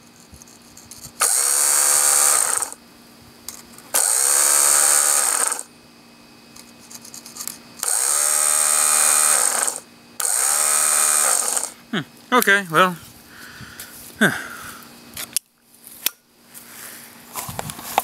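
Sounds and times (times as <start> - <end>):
starter motor spinning: 1.2 - 2.8, 3.9 - 5.7, 7.8 - 11.8.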